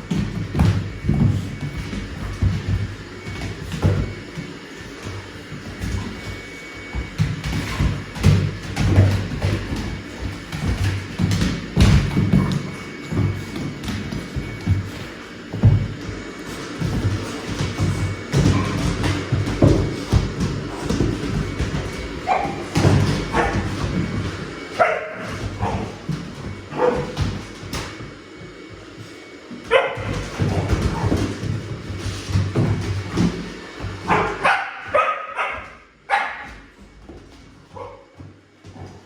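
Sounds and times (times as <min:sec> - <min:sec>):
scuffling din: 0:00.0 - 0:39.0
dogs barking and yipping: 0:21.7 - 0:27.2, 0:29.7 - 0:31.2, 0:34.0 - 0:36.5.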